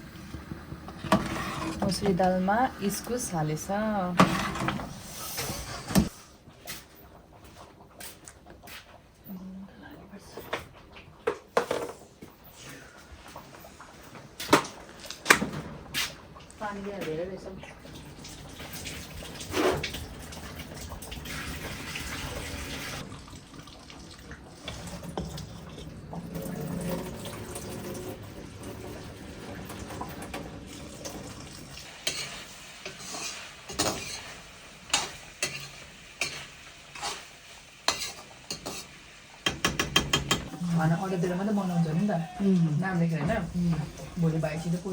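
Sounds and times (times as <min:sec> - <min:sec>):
metal utensils clinking on pots: 0:31.9 - 0:37.2, 0:37.9 - 0:44.9.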